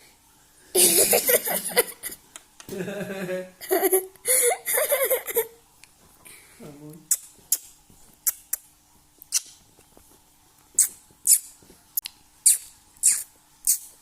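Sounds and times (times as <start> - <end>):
parrot kissing sounds: 7.1 - 9.6, 10.8 - 14.0.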